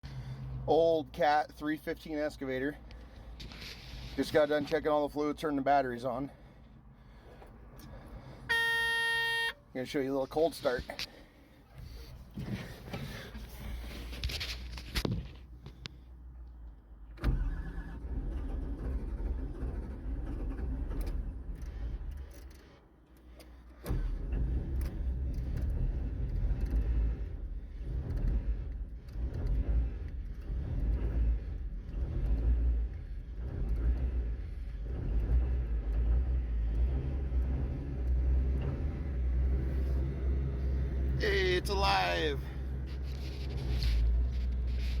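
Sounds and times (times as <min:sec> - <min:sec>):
diesel engine running: 0:00.0 - 0:16.4, 0:17.2 - 0:45.0
starter cranking diesel engine: 0:17.1 - 0:45.0.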